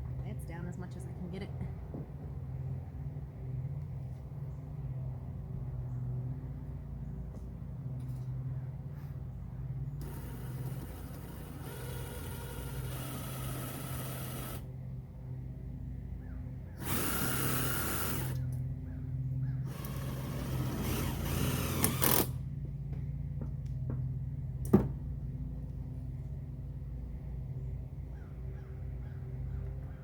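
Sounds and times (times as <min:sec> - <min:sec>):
steady low hum: 0:00.0 - 0:30.0
drill driving screws into metal: 0:10.0 - 0:14.7, 0:16.8 - 0:18.5, 0:19.7 - 0:22.4.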